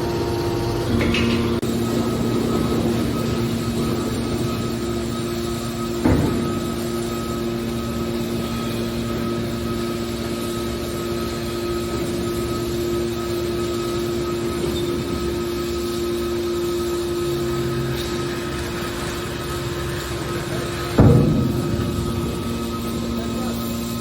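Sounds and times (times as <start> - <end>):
hydraulic power unit humming: 0.0 - 24.0
loud knock: 21.0 - 23.9.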